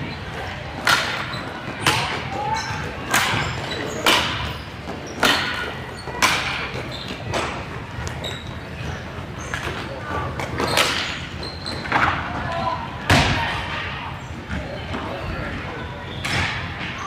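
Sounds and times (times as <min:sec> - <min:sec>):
hockey sticks striking ball: 0:03.0 - 0:07.6.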